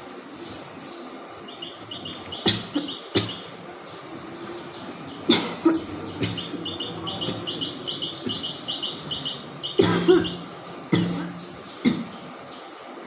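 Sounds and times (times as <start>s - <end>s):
small bird chirping: 0.4s - 12.8s
woman coughing and hawking: 2.4s - 3.6s, 5.3s - 6.6s, 9.8s - 12.2s.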